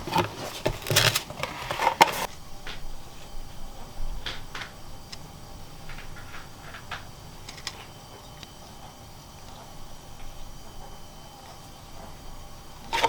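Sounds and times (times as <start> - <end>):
hands handling device and packaging: 0.0 - 2.3.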